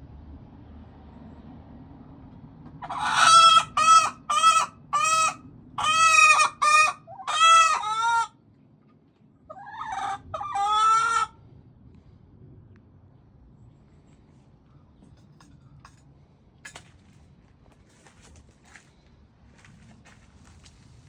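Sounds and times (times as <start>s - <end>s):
hen squawking: 2.8s - 8.3s.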